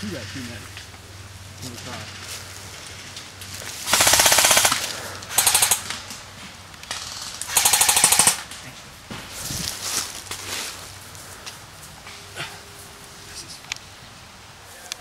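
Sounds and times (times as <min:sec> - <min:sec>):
airsoft rifle automatic bursts: 0:03.9 - 0:05.9, 0:06.9 - 0:08.4.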